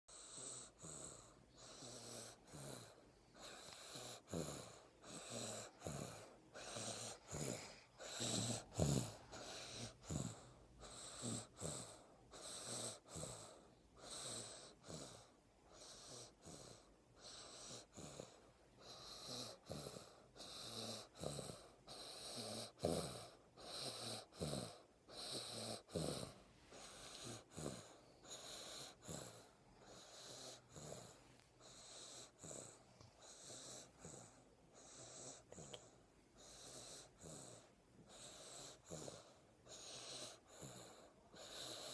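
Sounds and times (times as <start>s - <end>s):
faint breathy snoring: 0.1s - 41.9s.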